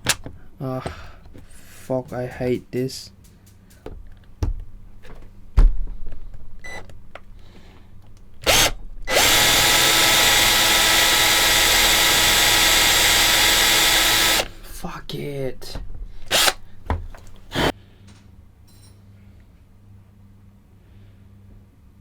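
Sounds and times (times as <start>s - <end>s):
handling knocks: 0.0s - 8.4s, 15.6s - 17.7s
handheld power tool running: 8.3s - 14.7s, 16.2s - 17.7s.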